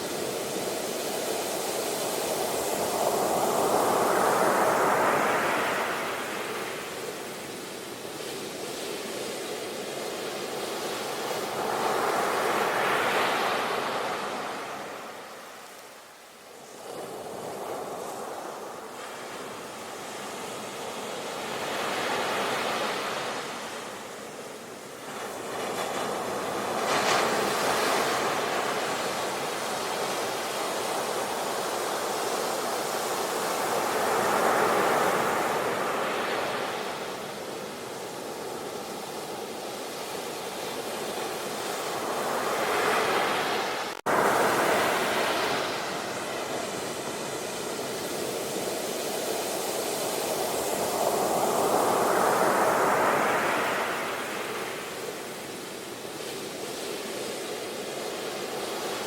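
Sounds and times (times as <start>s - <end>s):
ocean waves breaking on shore: 0.0s - 59.0s.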